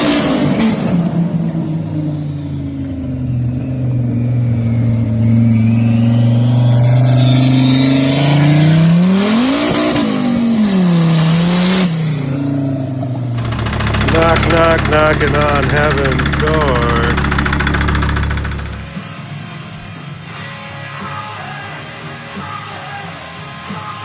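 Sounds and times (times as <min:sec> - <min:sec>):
car engine running and revving: 0:13.4 - 0:18.9.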